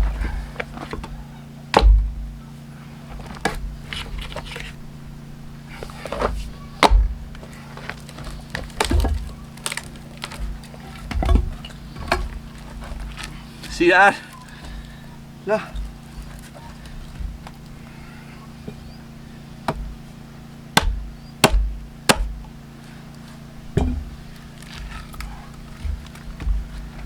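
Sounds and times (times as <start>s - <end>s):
splitting tool striking wood: 1.7s - 2.2s, 5.8s - 17.9s, 20.7s - 27.0s.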